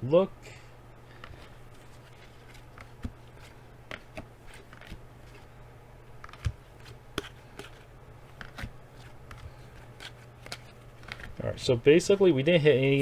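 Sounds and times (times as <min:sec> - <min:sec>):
low steady hum: 0:00.0 - 0:13.0
cards tapping and clicking: 0:01.1 - 0:05.6, 0:06.2 - 0:13.0.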